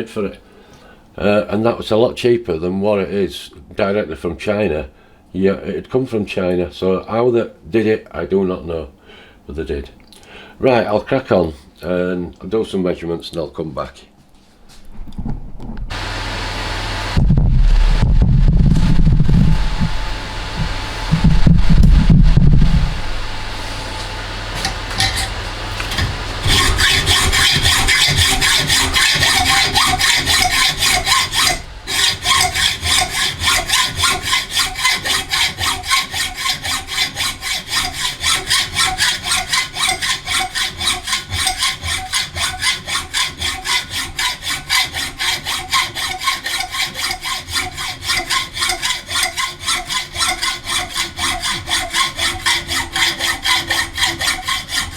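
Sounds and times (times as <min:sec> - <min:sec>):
low handling knock: 0:17.2 - 0:23.4
hacksaw cutting metal bar: 0:18.8 - 0:54.9.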